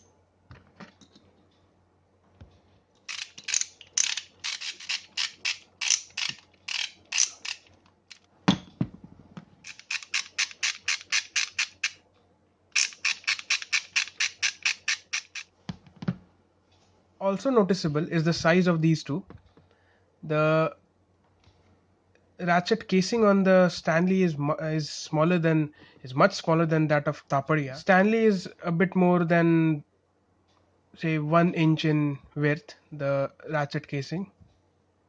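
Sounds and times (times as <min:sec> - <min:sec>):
ratchet wrench clicking: 0:03.1 - 0:07.7, 0:09.7 - 0:12.0, 0:12.8 - 0:15.5.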